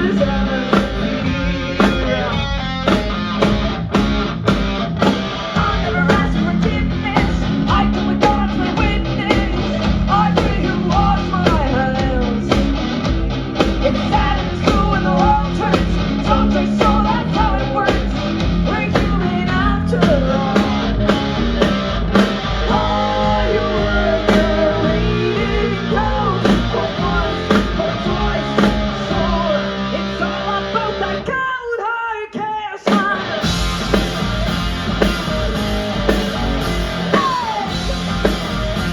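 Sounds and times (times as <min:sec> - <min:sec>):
person singing: 0:00.0 - 0:02.6, 0:05.5 - 0:12.8, 0:13.7 - 0:21.3, 0:22.6 - 0:33.6, 0:36.8 - 0:38.9
drum kit: 0:00.0 - 0:30.4, 0:32.9 - 0:38.9
bass guitar: 0:00.0 - 0:31.6, 0:32.9 - 0:38.9
electric guitar: 0:00.0 - 0:31.8, 0:32.4 - 0:38.9.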